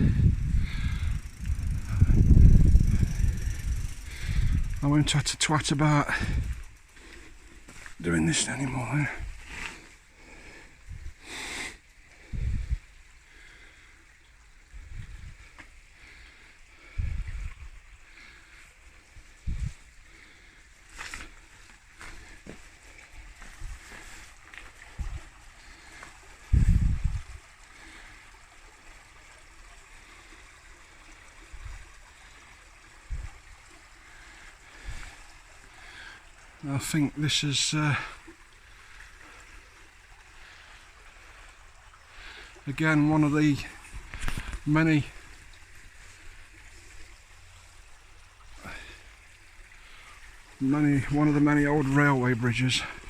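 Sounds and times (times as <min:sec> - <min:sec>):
low wind thumps: 0:00.0 - 0:04.9, 0:26.5 - 0:27.4
wind buffeting microphone: 0:00.0 - 0:05.2, 0:06.1 - 0:06.8, 0:10.8 - 0:11.2, 0:12.2 - 0:12.9, 0:14.7 - 0:15.5, 0:16.9 - 0:17.9, 0:19.2 - 0:19.9, 0:24.8 - 0:25.5, 0:26.4 - 0:27.5, 0:33.0 - 0:33.6
bike tyres rolling: 0:00.0 - 0:08.0.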